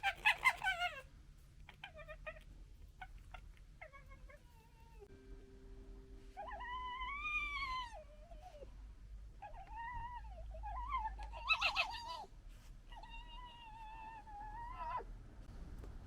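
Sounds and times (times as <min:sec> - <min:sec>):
fox yelps: 0:00.0 - 0:01.1, 0:01.7 - 0:05.0, 0:06.4 - 0:08.7, 0:09.4 - 0:12.3, 0:12.9 - 0:15.1
fox whining calls: 0:06.4 - 0:08.7, 0:09.4 - 0:12.3.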